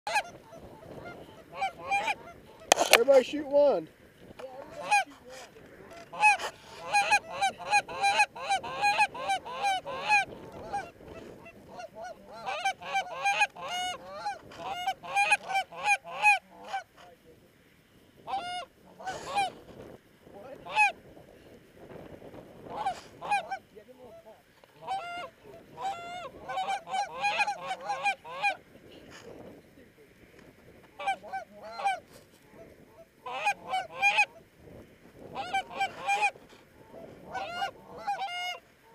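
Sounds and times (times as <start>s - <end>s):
geese honking and clucking: 0.1s - 3.8s, 4.4s - 17.1s, 18.2s - 19.7s, 20.4s - 21.0s, 22.6s - 28.7s, 30.8s - 34.6s, 35.2s - 38.9s.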